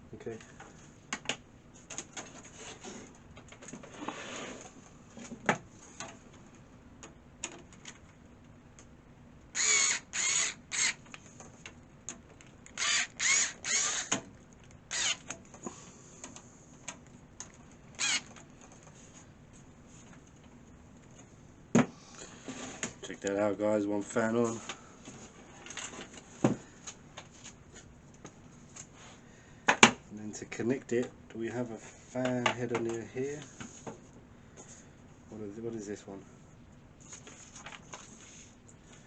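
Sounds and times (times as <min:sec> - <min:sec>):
squeaky screws turning: 0:09.6 - 0:11.0, 0:12.8 - 0:14.2, 0:14.9 - 0:15.3, 0:18.0 - 0:18.4.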